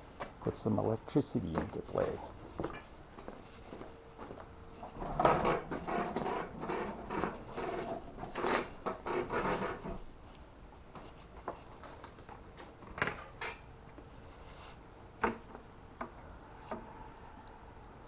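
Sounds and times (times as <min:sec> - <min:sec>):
tools handled by hand: 0:02.0 - 0:03.0.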